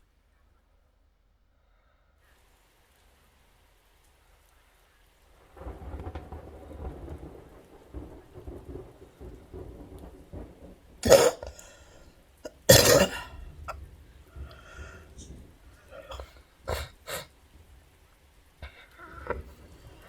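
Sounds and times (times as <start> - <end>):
rain: 1.6 - 20.0
thunder rumbling: 2.4 - 20.0
person coughing: 11.0 - 11.9, 12.5 - 13.8, 15.9 - 17.3.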